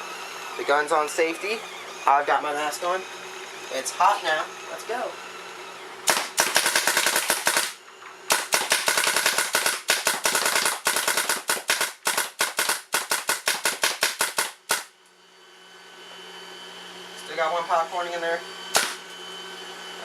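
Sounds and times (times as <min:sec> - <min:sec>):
paintball marker firing rapidly: 0:06.0 - 0:14.9, 0:18.7 - 0:19.0.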